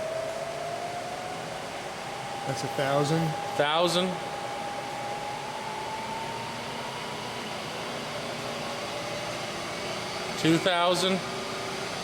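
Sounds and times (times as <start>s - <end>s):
mill spindle whirring and whining: 0.0s - 12.0s.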